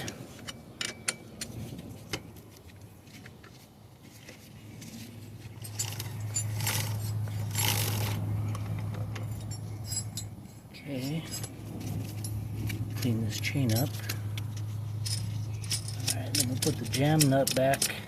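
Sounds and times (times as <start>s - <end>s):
steady low hum: 0.0s - 18.0s
metal scraping: 4.0s - 18.0s
metal hand tools clinking: 9.1s - 18.0s.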